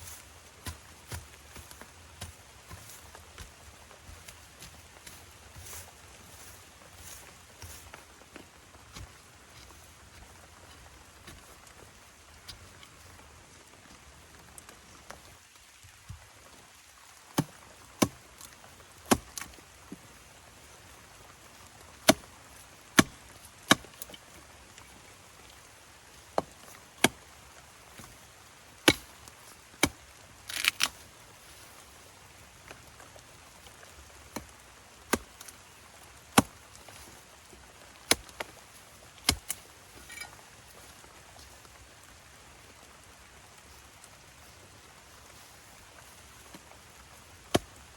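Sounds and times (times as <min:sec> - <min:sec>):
blade chopping wood: 0:19.1 - 0:19.5, 0:22.0 - 0:22.2, 0:23.0 - 0:24.1, 0:28.8 - 0:29.1.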